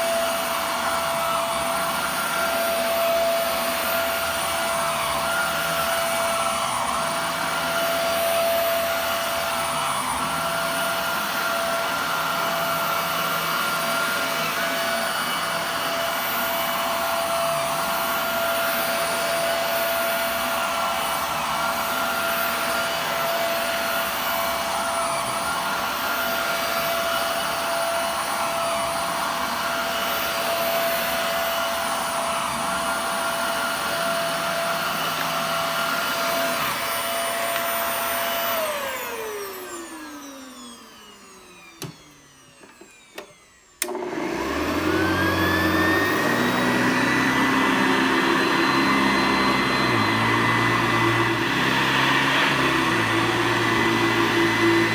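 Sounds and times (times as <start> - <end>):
vacuum cleaner whining: 0.0 - 54.9
vacuum motor spinning up: 0.0 - 54.9
vacuum motor winding down: 0.0 - 54.9
vacuum switch click: 41.7 - 44.2.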